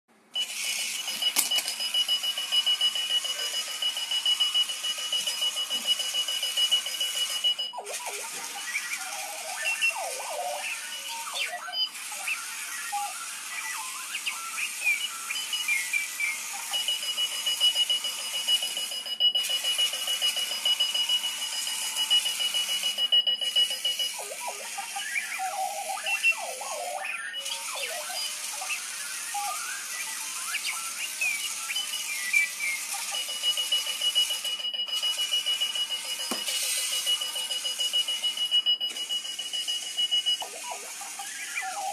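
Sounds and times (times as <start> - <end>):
robotic alarm clock beeps and chirps: 0.4 - 41.9.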